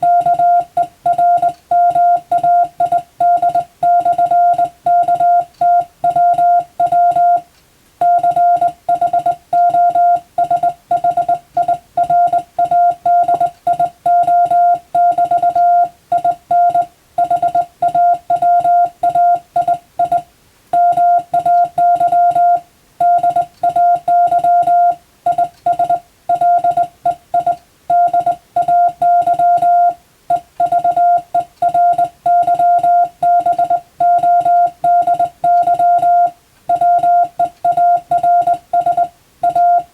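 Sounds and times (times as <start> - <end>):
morse code beeping tone: 0.0 - 39.9.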